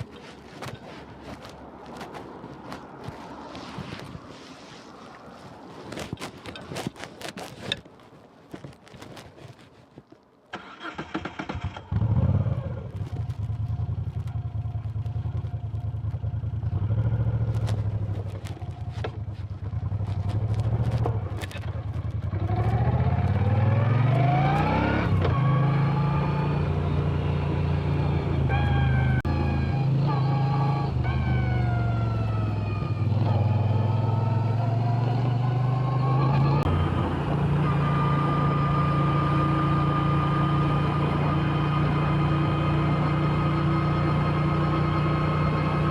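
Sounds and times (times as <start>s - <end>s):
motorcycle engine idling and revving: 10.6s - 45.9s.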